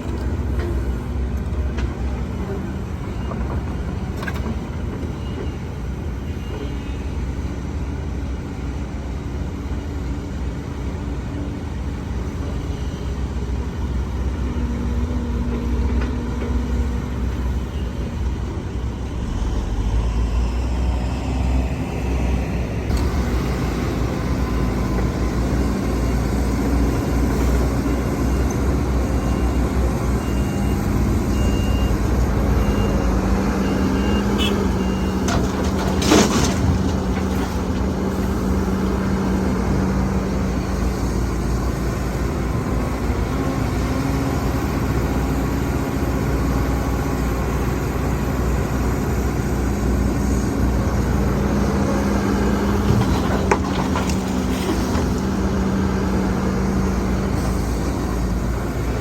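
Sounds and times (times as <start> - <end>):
heavy diesel engines running: 0.0 - 59.0
truck reversing alarm beeps: 2.6 - 7.5, 12.3 - 15.2, 23.0 - 36.8.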